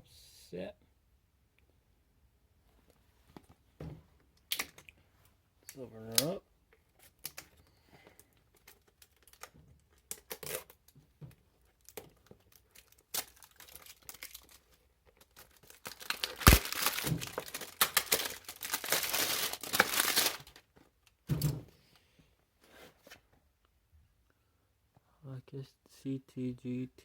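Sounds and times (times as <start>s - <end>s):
packaging tearing and crinkling: 8.6s - 10.8s, 11.8s - 20.7s.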